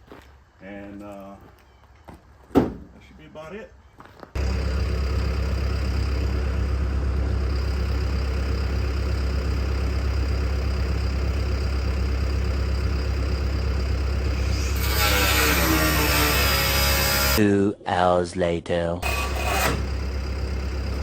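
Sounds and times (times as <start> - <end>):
engine idling: 4.4 - 17.4, 19.0 - 21.0.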